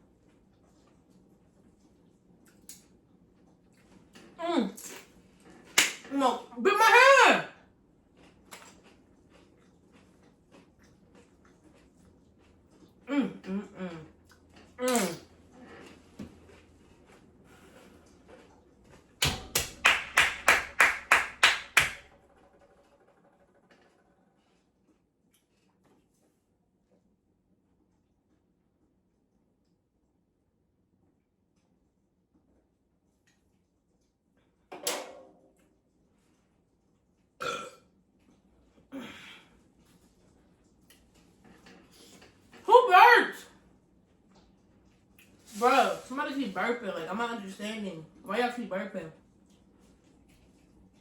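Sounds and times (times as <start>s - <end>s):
sharp hand claps: 5.8s - 6.1s, 19.2s - 22.2s
person burping: 13.1s - 14.1s, 14.8s - 15.2s, 37.4s - 37.8s.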